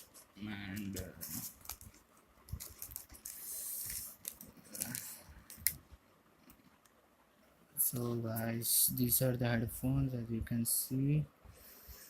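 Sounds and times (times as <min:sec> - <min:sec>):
packaging rustling: 0:00.0 - 0:05.8.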